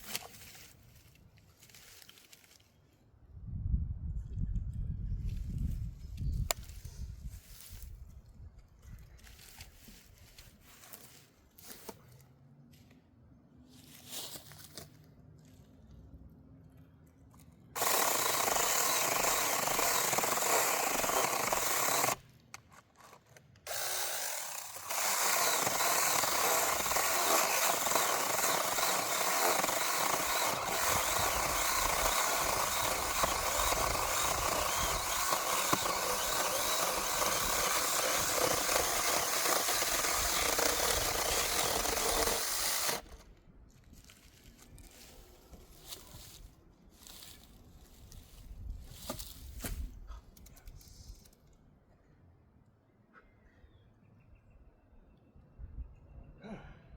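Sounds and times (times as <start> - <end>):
mini chainsaw cutting wood: 17.8 - 22.3, 23.0 - 43.3.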